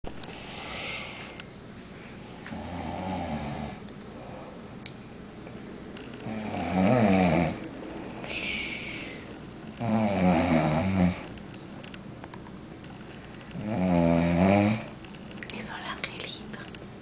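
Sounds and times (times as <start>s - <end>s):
breathy exhale: 0.3s - 1.4s, 7.9s - 9.4s
person snoring: 2.5s - 3.8s, 6.2s - 7.6s, 8.2s - 11.3s, 13.6s - 15.0s.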